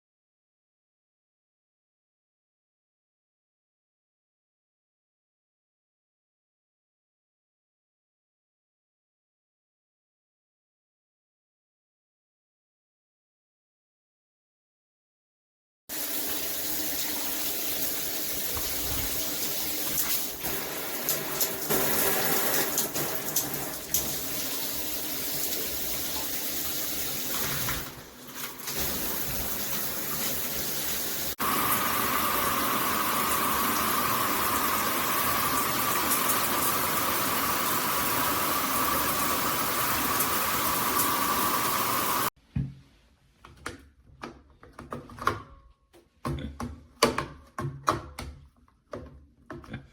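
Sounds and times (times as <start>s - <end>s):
shower head spraying water: 15.9s - 42.3s.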